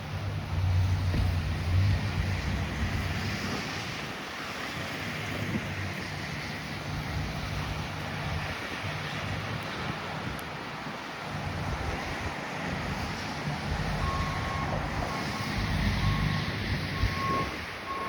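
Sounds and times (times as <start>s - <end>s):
diesel engine running: 0.0s - 4.1s, 12.8s - 18.0s
rain hissing on wet road: 0.0s - 18.0s.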